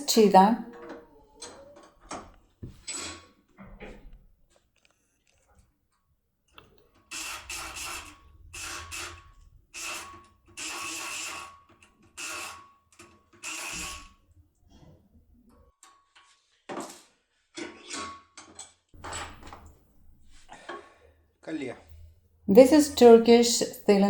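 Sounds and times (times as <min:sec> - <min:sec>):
electric pick gun buzzing: 0:07.1 - 0:14.2.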